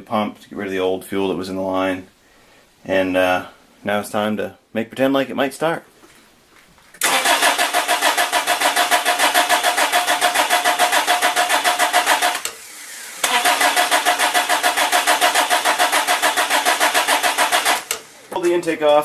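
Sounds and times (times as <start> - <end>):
car engine cranking on starter: 7.0 - 18.3.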